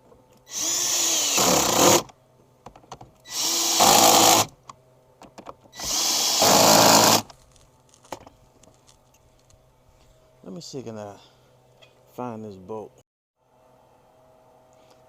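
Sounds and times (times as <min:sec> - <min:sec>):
power drill driving bolts: 0:00.5 - 0:02.1, 0:03.2 - 0:04.5, 0:05.7 - 0:07.3.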